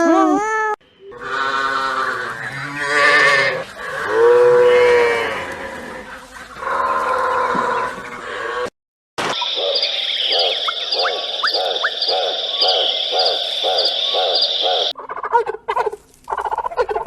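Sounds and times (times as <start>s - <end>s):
cattle mooing: 1.1s - 7.9s.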